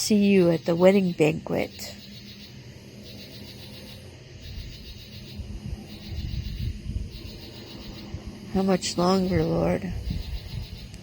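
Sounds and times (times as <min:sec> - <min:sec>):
night insects chirping: 0:00.0 - 0:11.0
low rumble: 0:04.4 - 0:11.0.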